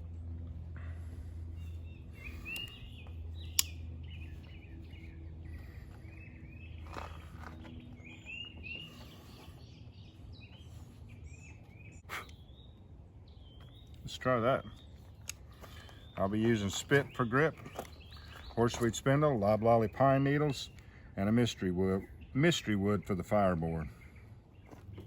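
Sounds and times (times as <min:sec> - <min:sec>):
low hum: 0:00.0 - 0:21.2
birds chirping: 0:00.0 - 0:25.0
sharp click: 0:03.5 - 0:03.8.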